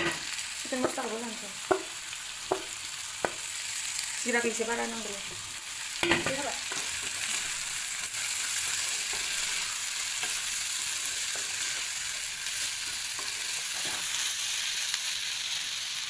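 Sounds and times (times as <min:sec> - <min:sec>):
food sizzling in hot oil: 0:00.0 - 0:16.0
spoon scraping pan: 0:05.3 - 0:14.3.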